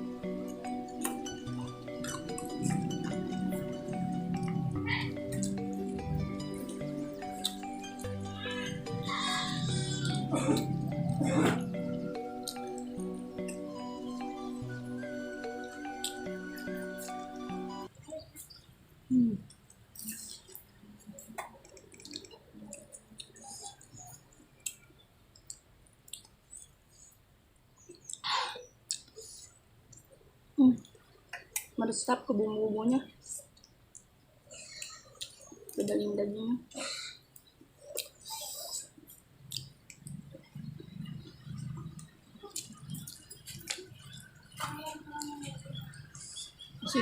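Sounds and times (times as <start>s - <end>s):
person chewing food: 0.8s - 3.7s, 4.4s - 13.7s, 19.4s - 27.2s, 28.8s - 30.2s, 33.3s - 36.0s, 37.2s - 44.6s
person chewing wetly: 1.9s - 2.4s, 25.4s - 26.7s, 28.9s - 30.1s, 33.3s - 36.0s, 37.4s - 40.2s, 41.2s - 44.6s
mouth clicks: 19.1s - 27.2s, 27.8s - 30.1s.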